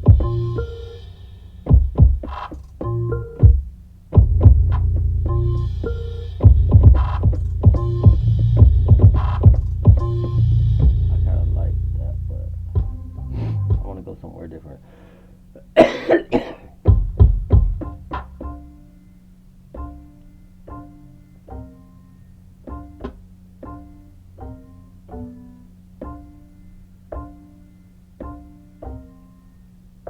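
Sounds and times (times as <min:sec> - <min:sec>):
loud percussive hits: 0:00.0 - 0:14.0
low hum: 0:00.0 - 0:14.8
plucked string notes: 0:04.2 - 0:14.2.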